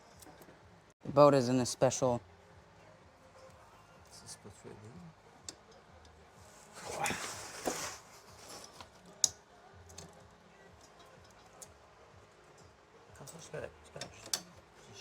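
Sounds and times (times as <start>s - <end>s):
scraping rustle of parts: 6.4s - 9.3s.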